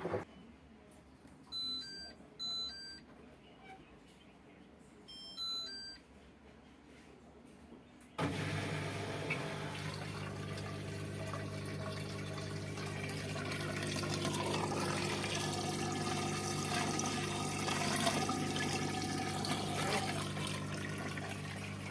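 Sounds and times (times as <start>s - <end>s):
drain pump humming: 8.2s - 21.9s.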